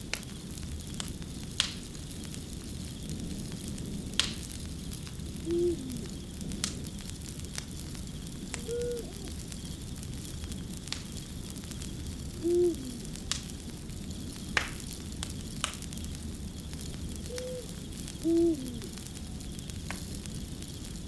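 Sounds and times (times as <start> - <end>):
wood fire crackling and popping: 0.0 - 21.0
steady low rumble: 2.3 - 21.0
owl hooting: 5.4 - 6.2, 8.5 - 9.5, 12.3 - 13.3, 17.2 - 19.3.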